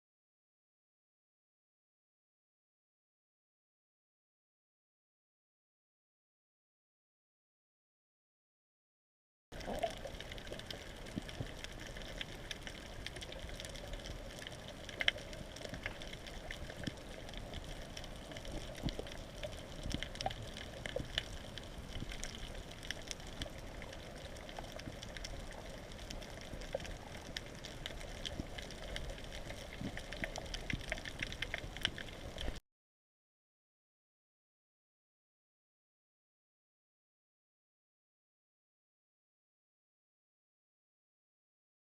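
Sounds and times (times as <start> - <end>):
underwater crackles and clicks: 9.5 - 32.6.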